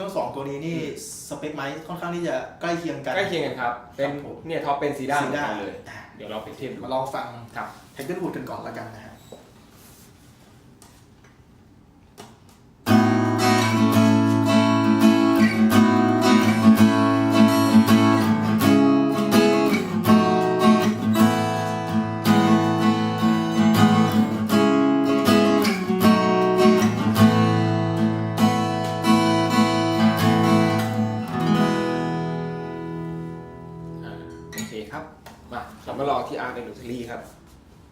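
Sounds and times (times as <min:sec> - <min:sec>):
acoustic guitar strummed chords: 0:12.8 - 0:34.7.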